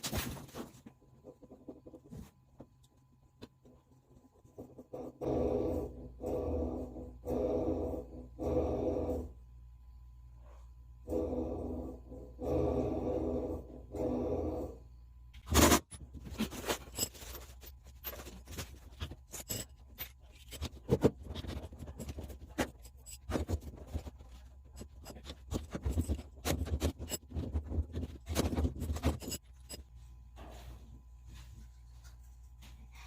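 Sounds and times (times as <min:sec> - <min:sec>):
washing machine grinding: 0:04.8 - 0:09.4, 0:11.1 - 0:14.8
irregular clicking and knocking: 0:15.4 - 0:29.9.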